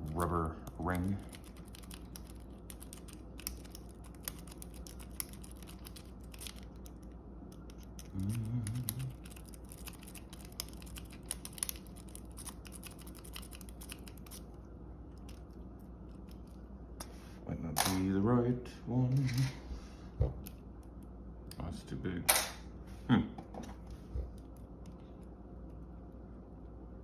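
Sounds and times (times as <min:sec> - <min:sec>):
person humming: 0:08.1 - 0:09.2.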